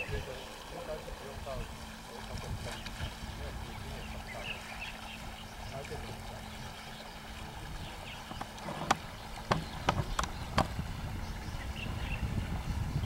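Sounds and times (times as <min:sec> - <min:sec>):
steady low rumble: 0:00.0 - 0:13.0
sharp knocks: 0:08.3 - 0:10.8.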